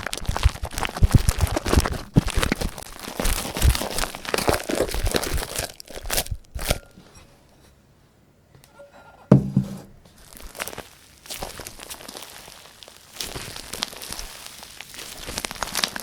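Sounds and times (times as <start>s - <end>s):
slime squished by hand: 10.2s - 16.0s.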